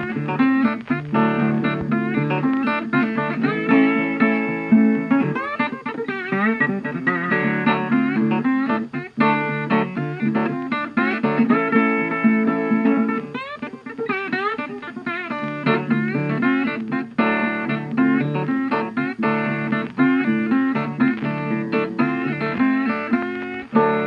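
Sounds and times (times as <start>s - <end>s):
guitar tune with bending notes: 0.0s - 24.0s.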